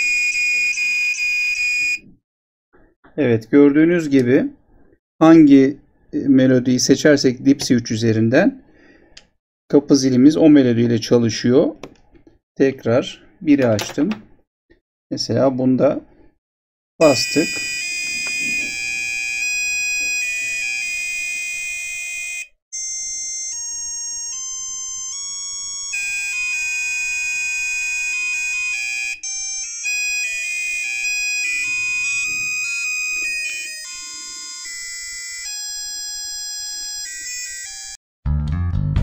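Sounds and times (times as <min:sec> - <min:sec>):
electronic buzzer melody: 0:17.0 - 0:38.0.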